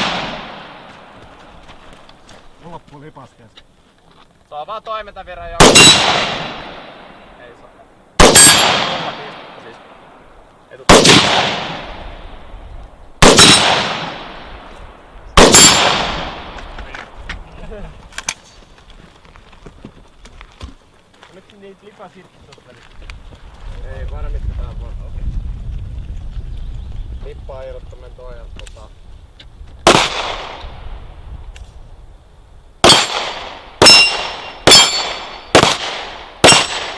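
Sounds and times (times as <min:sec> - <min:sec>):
gunshots with echo: 0:00.0 - 0:01.1, 0:05.6 - 0:07.3, 0:08.2 - 0:10.0, 0:10.9 - 0:12.4, 0:13.2 - 0:14.6, 0:15.4 - 0:16.8, 0:29.8 - 0:30.8, 0:32.8 - 0:36.9.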